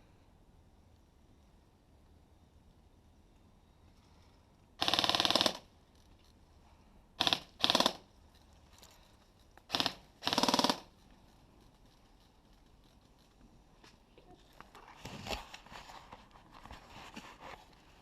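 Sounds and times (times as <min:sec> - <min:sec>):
airsoft gun firing bursts: 0:04.8 - 0:05.7, 0:07.2 - 0:08.1, 0:09.6 - 0:11.0.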